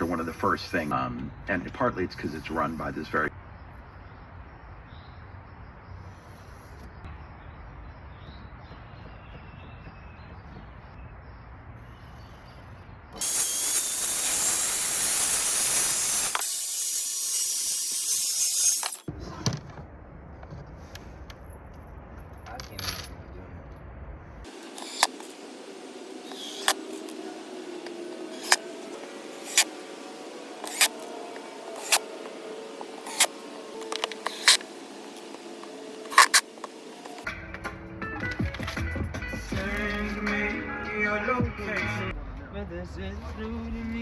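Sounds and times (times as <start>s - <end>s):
loud steady hiss: 13.2s - 19.1s, 24.5s - 37.2s.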